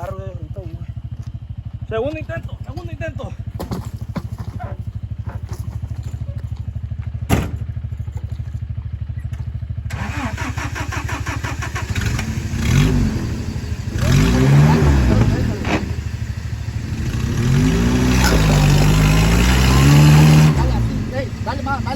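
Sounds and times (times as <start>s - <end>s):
pickup truck engine running: 0.0s - 21.9s
engine revving: 9.9s - 21.9s.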